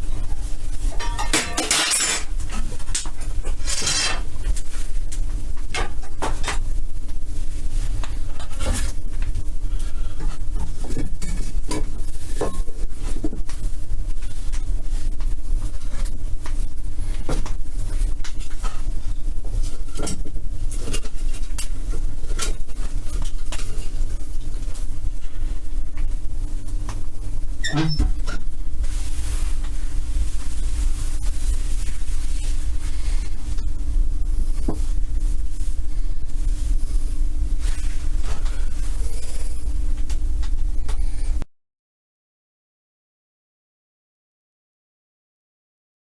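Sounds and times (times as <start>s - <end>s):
low rumble and hum: 0.0s - 41.5s
knocks and clanks: 0.9s - 4.3s.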